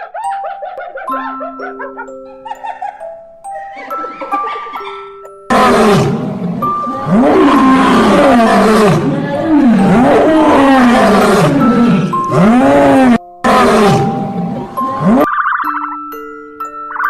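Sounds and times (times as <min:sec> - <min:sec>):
music with bell-like notes: 0:00.0 - 0:17.0
large animal deep calls: 0:03.5 - 0:15.3.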